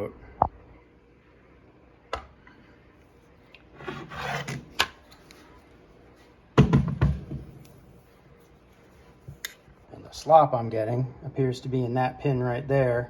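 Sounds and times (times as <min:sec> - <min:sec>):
hinge scraping: 0:03.7 - 0:05.0.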